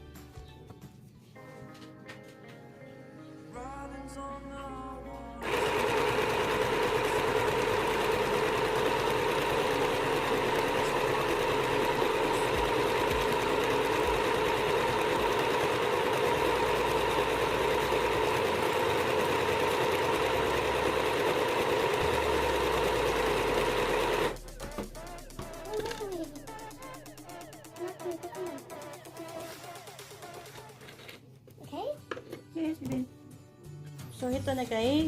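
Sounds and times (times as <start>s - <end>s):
sewing machine motor humming: 5.4s - 31.2s.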